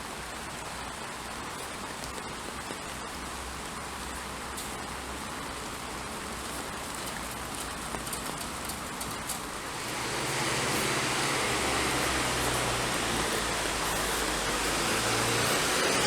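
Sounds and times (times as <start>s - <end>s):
background hiss: 0.0s - 16.0s
vehicle engine humming: 9.4s - 16.0s.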